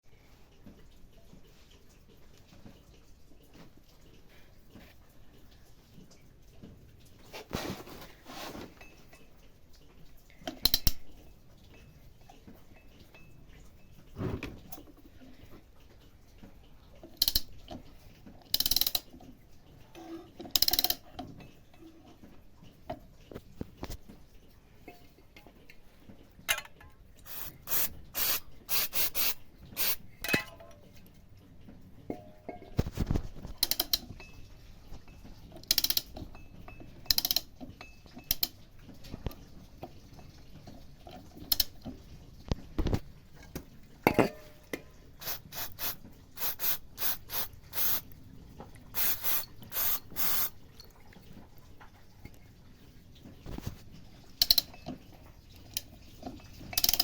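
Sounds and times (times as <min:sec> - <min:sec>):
metal tools clicking and knocking: 0:10.5 - 0:11.1, 0:18.5 - 0:19.1, 0:20.4 - 0:21.5, 0:26.5 - 0:27.0, 0:29.2 - 0:30.9, 0:33.5 - 0:34.4, 0:35.6 - 0:38.6, 0:44.0 - 0:44.9, 0:56.7 - 0:57.0
ratchet clicking: 0:18.5 - 0:19.0, 0:20.6 - 0:21.0, 0:35.7 - 0:36.1, 0:37.1 - 0:37.4, 0:49.0 - 0:50.5.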